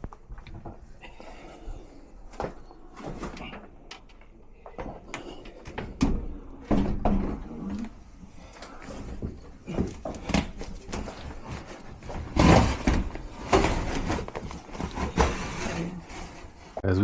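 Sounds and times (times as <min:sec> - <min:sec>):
equipment knocking and scraping: 0:08.7 - 0:16.8.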